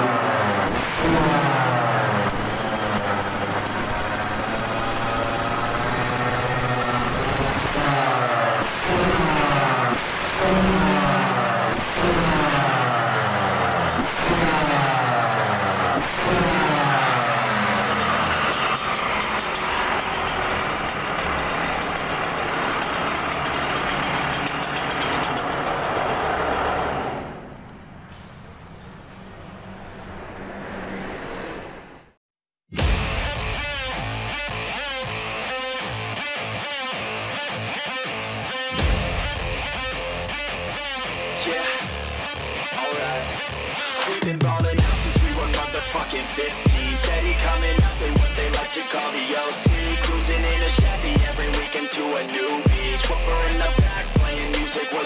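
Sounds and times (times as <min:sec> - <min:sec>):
two-stroke engine revving: 0:00.0 - 0:27.7, 0:38.7 - 0:55.0.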